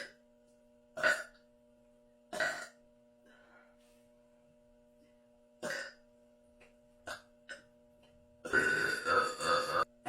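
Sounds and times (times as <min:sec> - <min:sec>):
faint steady hum: 0:00.0 - 0:10.0
person burping: 0:01.0 - 0:01.4, 0:02.3 - 0:02.8, 0:05.6 - 0:06.0, 0:07.1 - 0:07.7, 0:08.4 - 0:09.9.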